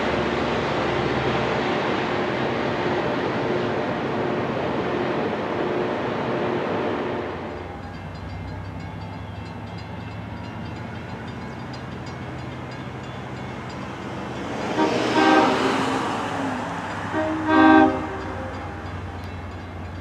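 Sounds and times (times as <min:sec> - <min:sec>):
low rumble of train: 0:00.0 - 0:20.0
train horn blasts: 0:14.6 - 0:19.0.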